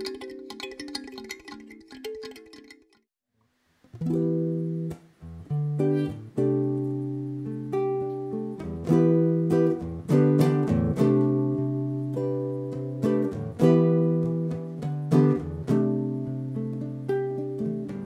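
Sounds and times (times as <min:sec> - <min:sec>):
solo jazz guitar chords: 0:04.0 - 0:18.0.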